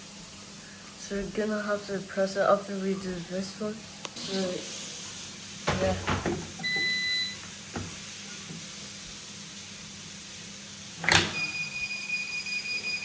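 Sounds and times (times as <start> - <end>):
fire alarm continuous tone: 6.6 - 7.4, 11.3 - 13.0
short beep: 11.4 - 13.0.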